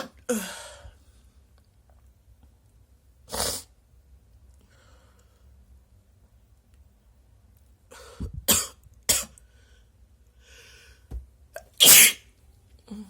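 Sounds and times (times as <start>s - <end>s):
person sneezing: 11.8s - 12.2s.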